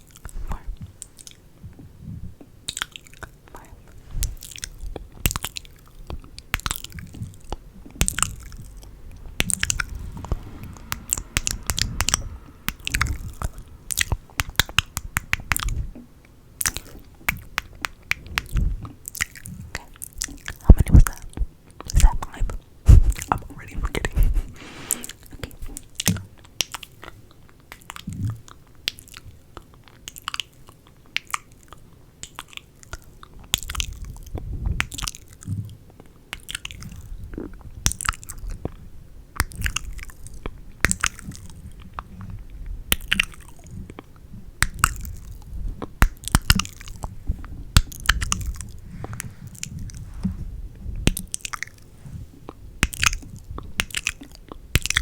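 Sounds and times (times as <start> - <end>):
low rumble: 4.0 - 16.7, 22.9 - 25.2.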